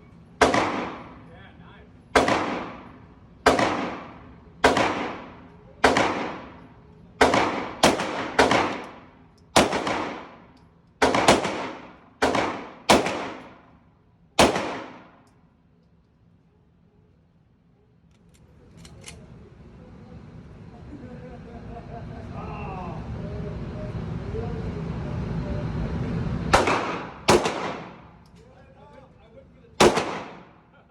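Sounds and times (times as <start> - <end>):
gunshots: 0.4 - 1.3, 2.1 - 6.6, 7.2 - 13.6, 14.4 - 15.2, 26.5 - 28.2, 29.8 - 30.6.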